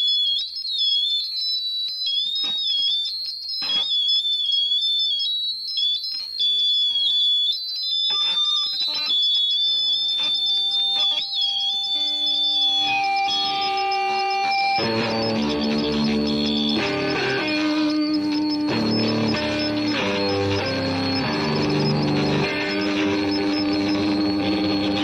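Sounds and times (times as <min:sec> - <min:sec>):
piercing alarm-like tone: 0:00.0 - 0:25.0
low held notes: 0:14.0 - 0:25.0.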